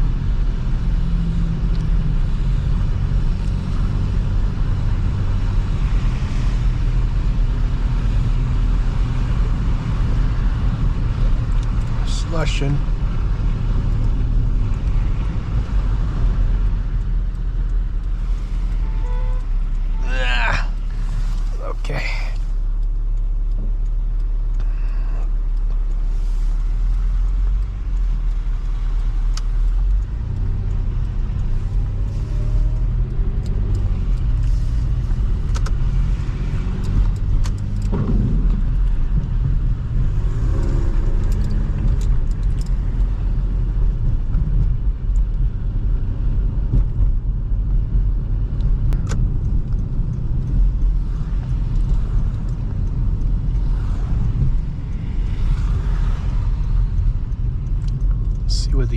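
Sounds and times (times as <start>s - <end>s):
engine and tyres rumbling: 0.0s - 58.9s
small clicks: 22.3s - 43.1s, 48.6s - 58.5s.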